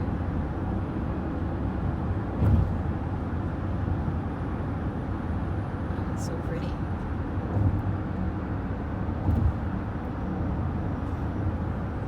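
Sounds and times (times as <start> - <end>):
car road and engine noise: 0.0 - 12.0
thump: 2.4 - 2.8, 9.2 - 9.6.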